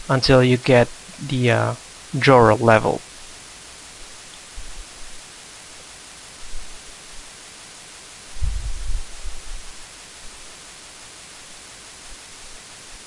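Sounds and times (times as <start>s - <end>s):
recording hiss: 0.0s - 13.0s.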